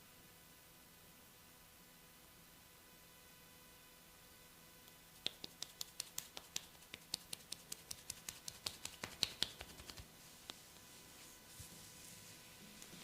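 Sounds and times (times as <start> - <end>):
fingers snapping: 4.8 - 10.6.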